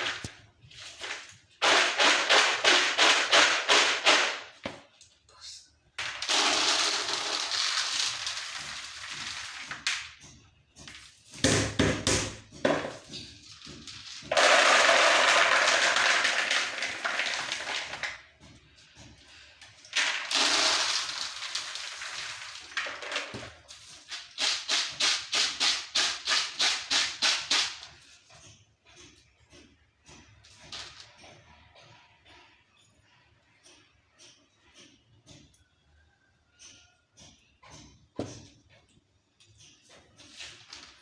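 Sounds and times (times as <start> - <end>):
maize kernels rattling in a tray: 6.0 - 10.1, 13.4 - 18.3, 19.8 - 28.1
rhythmic tosses of kernels: 6.2 - 9.8, 14.3 - 18.1, 20.0 - 22.8, 23.8 - 27.9.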